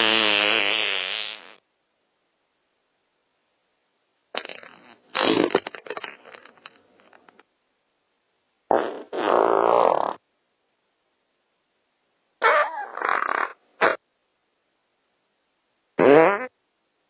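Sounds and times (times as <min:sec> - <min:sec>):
fart sound effects: 0:00.0 - 0:01.6, 0:04.4 - 0:06.5, 0:08.7 - 0:10.2, 0:12.4 - 0:14.0, 0:16.0 - 0:16.5.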